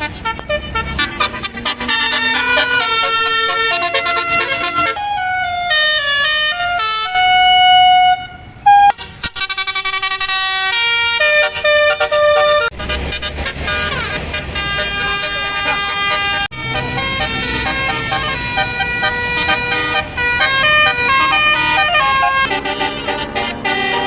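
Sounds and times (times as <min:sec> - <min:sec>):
low engine rumble: 0:00.0 - 0:10.7, 0:11.4 - 0:24.0
bus horns playing melodies: 0:00.0 - 0:24.0.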